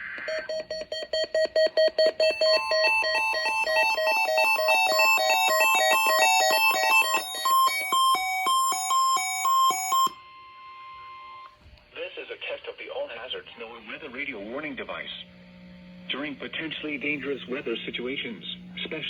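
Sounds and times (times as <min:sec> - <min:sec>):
overlapping electronic beeps: 0:00.2 - 0:10.2
steady weather alert tone: 0:02.2 - 0:10.0.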